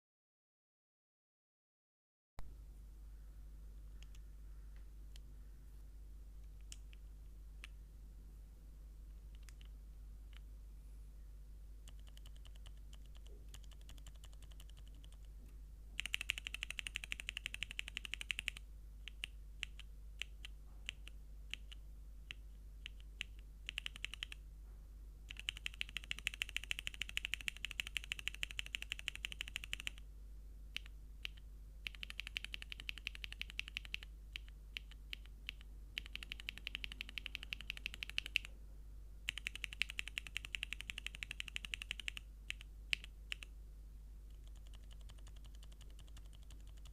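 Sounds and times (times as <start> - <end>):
mechanical keyboard typing: 9.3 - 9.7, 11.9 - 15.3, 16.0 - 24.4, 25.3 - 30.0, 30.8 - 38.5, 39.3 - 43.5, 44.3 - 46.9.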